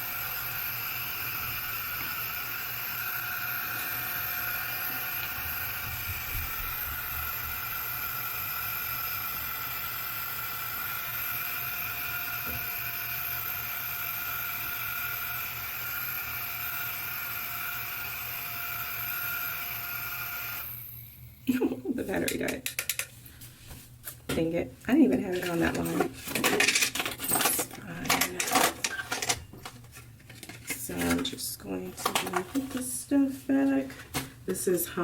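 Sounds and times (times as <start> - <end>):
handheld fan whirring: 0.0 - 23.1.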